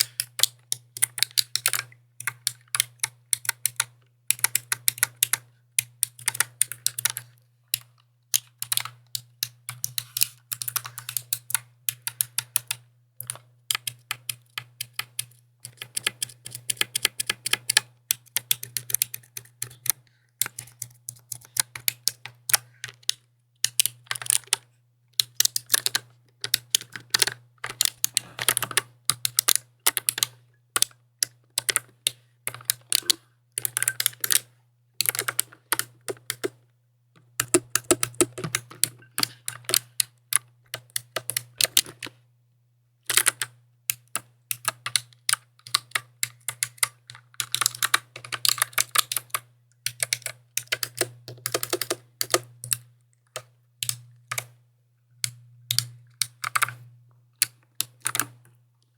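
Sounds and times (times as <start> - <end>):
mechanical keyboard key clacks: 37.4 - 40.0.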